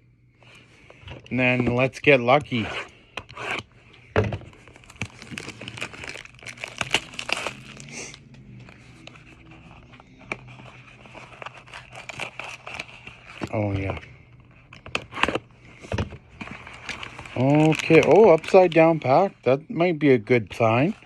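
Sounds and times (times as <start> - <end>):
packaging crinkling: 4.5 - 14.0, 14.7 - 19.3.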